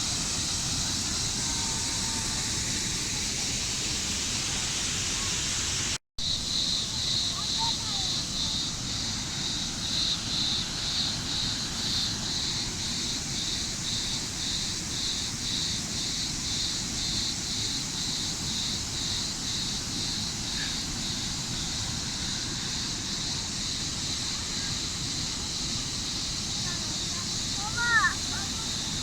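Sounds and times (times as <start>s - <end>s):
waterfall rushing: 0.0s - 6.0s.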